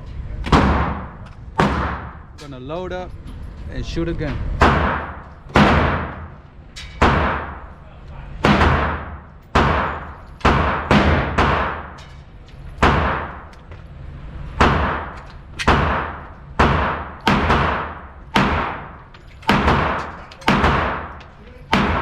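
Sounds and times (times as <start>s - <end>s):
pistol shots with echo: 0.5s - 2.3s, 4.6s - 6.3s, 7.0s - 7.7s, 8.4s - 12.0s, 12.8s - 13.5s, 14.6s - 22.0s.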